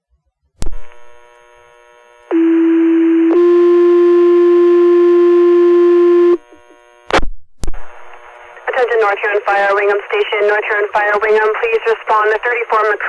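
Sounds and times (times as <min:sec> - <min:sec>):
faint radio hiss: 0:06.1 - 0:13.0.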